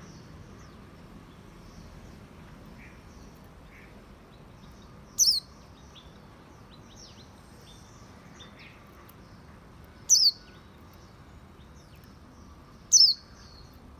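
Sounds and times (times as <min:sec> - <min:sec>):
faint bird chirps: 0:04.6 - 0:12.1, 0:12.8 - 0:13.9.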